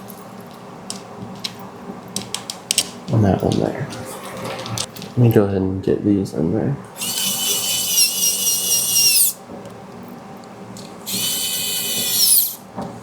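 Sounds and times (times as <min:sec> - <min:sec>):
electric screwdriver motor whining: 0:07.0 - 0:09.4, 0:11.1 - 0:12.6.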